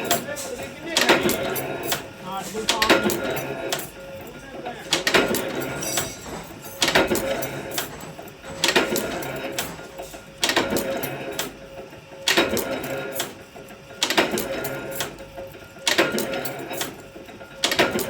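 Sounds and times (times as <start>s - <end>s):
machine humming: 0.0s - 13.2s
machine clanking: 0.0s - 18.0s.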